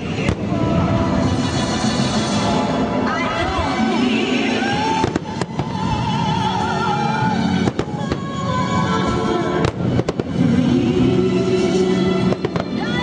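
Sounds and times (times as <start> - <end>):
fireworks bangs: 0.0 - 2.6, 4.8 - 6.4, 7.6 - 8.6, 9.6 - 10.6
music: 0.0 - 13.0.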